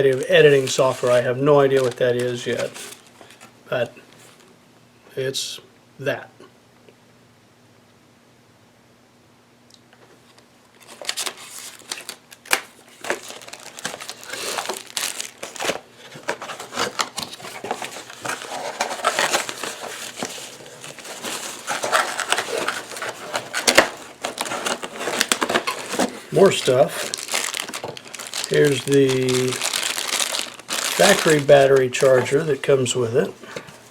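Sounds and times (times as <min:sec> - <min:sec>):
packaging wrap crinkling: 0:00.0 - 0:03.5, 0:10.8 - 0:33.8.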